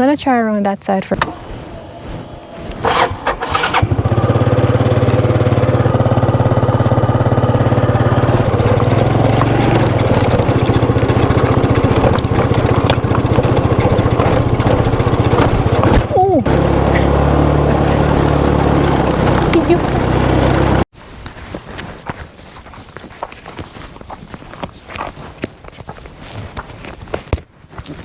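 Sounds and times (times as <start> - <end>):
scooter engine: 1.2 - 20.9.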